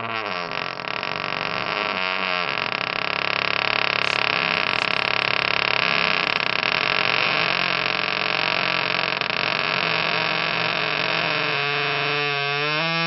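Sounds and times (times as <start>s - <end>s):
door hinge creaking: 0.0s - 7.4s.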